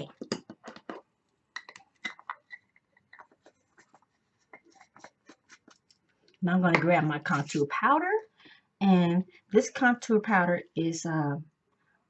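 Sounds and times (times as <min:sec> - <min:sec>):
makeup containers clicking and tapping: 0:00.0 - 0:05.4.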